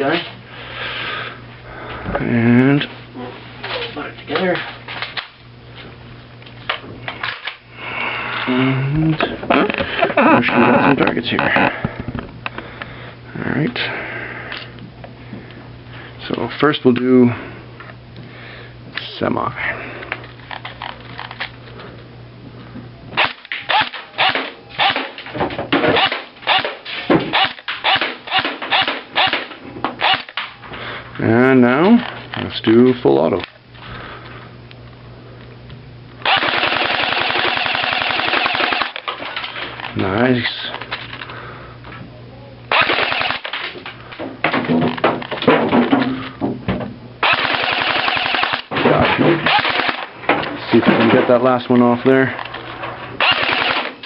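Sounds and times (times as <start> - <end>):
airsoft rifle shots: 23.2 - 25.2, 25.8 - 30.5, 36.2 - 39.1, 42.7 - 43.7, 47.2 - 50.1, 53.2 - 54.0.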